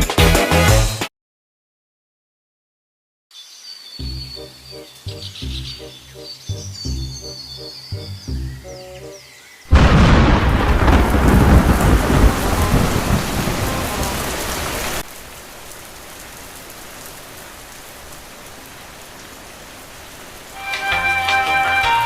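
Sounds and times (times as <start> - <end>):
steady rain: 4.0 - 22.0
thunder clap rumbling: 9.7 - 15.0.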